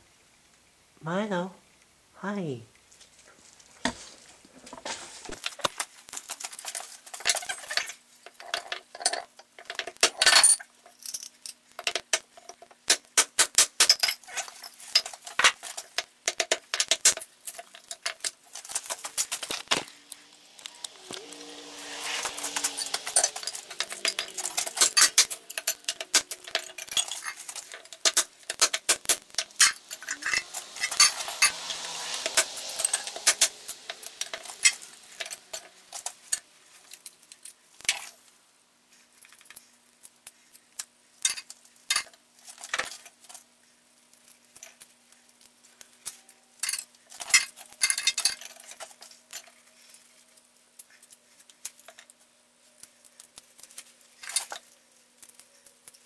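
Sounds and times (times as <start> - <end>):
small hard objects clinking: 13.8 - 38.3
faint steady hum: 13.9 - 56.0.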